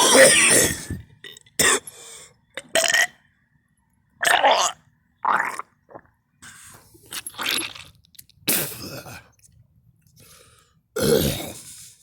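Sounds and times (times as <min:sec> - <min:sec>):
person coughing and retching: 0:00.0 - 0:01.9, 0:08.5 - 0:09.3, 0:11.0 - 0:11.6.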